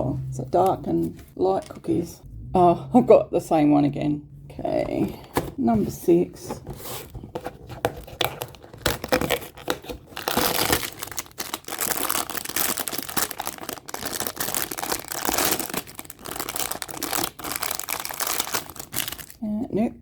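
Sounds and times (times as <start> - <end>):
packaging crinkling and tearing: 7.7 - 19.4.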